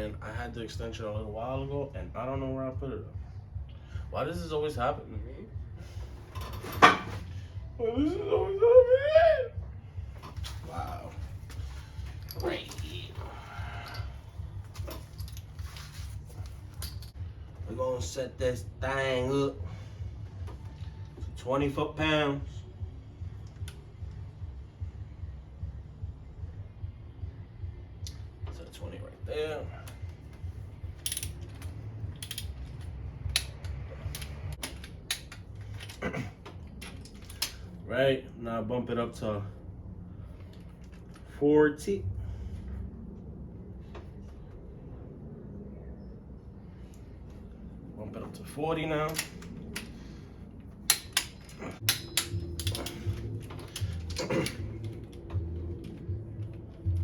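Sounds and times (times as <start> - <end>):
torque wrench clicking: 50.9 - 55.1.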